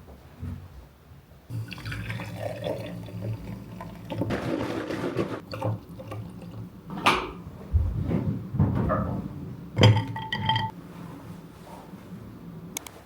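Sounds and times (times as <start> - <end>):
water running and pouring: 1.5 - 4.3, 5.4 - 6.7.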